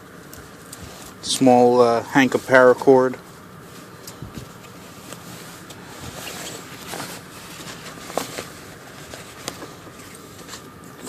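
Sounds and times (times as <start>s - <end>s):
fabric rustling: 3.2s - 10.8s.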